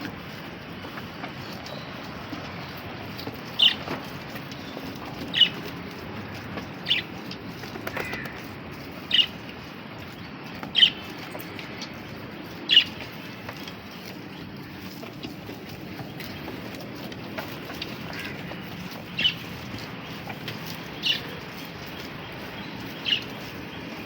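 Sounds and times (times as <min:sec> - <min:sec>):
bird chirping: 0:10.7 - 0:11.1, 0:20.8 - 0:24.0.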